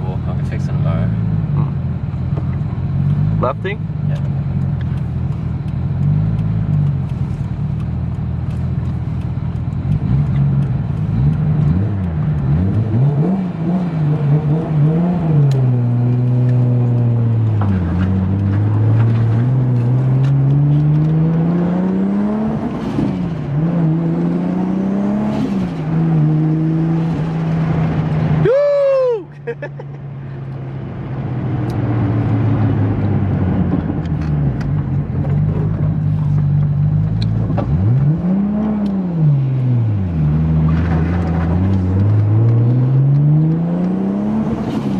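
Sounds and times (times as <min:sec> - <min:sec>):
car engine revving through gears: 0:00.3 - 0:28.4, 0:30.4 - 0:44.9.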